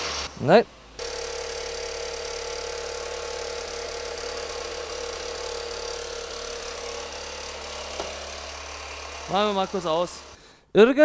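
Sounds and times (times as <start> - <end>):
car engine running with whine: 0.0 - 10.4
steady whining tone: 0.0 - 10.4.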